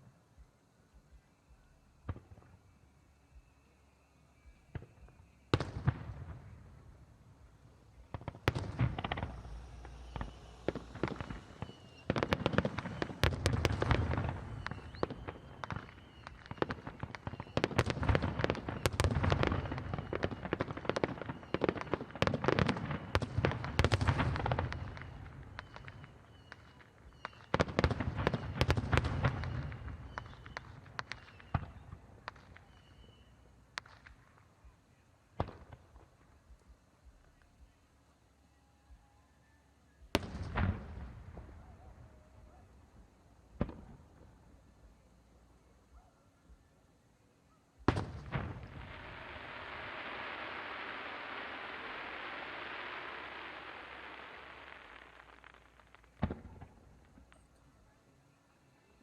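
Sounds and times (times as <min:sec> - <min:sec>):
fireworks reports and crackles: 0:00.0 - 0:39.0, 0:39.9 - 0:59.0
fireworks rumble: 0:04.4 - 0:38.0, 0:40.0 - 0:59.0
loud firework bang: 0:08.0 - 0:26.6.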